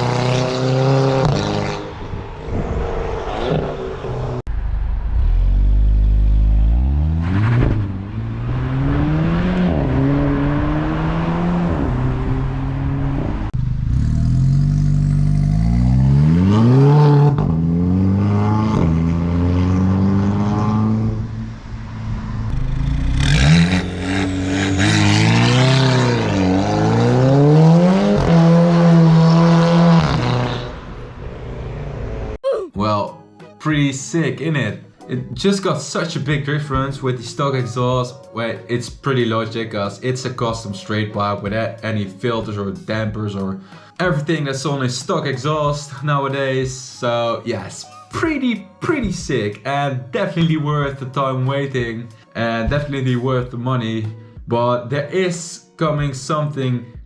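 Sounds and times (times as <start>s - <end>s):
car engine revving: 0.0s - 32.4s.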